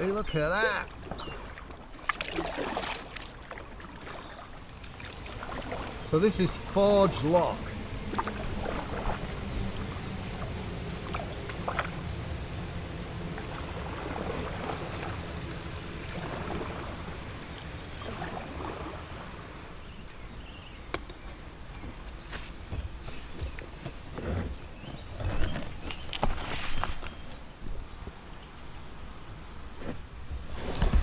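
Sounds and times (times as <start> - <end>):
paddle strokes in water: 0.0 - 31.0
steady low rush: 5.2 - 20.3.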